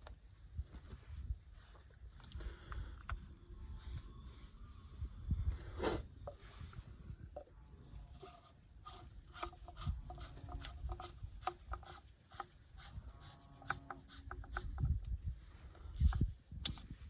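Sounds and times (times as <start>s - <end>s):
rubbing and faint squeaks: 5.8s - 17.0s
plastic pipe fittings clicking: 8.2s - 15.2s.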